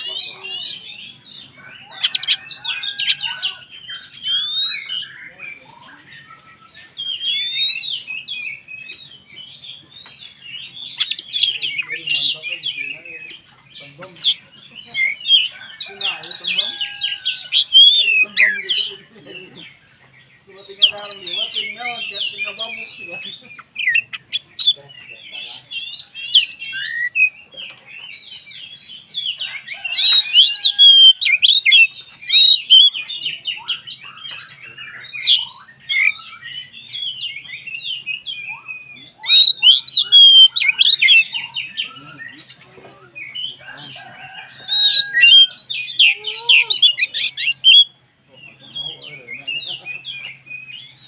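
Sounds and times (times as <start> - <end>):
bird singing whistles and trills: 1.9 - 15.8, 25.4 - 27.4, 28.3 - 48.0, 48.6 - 51.0.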